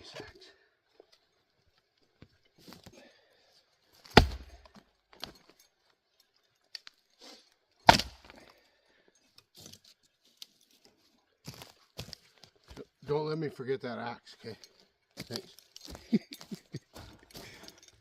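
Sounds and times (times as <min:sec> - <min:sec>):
wood being struck: 0:04.1 - 0:04.7, 0:07.9 - 0:08.4
light clicks and handling noise: 0:08.4 - 0:12.8.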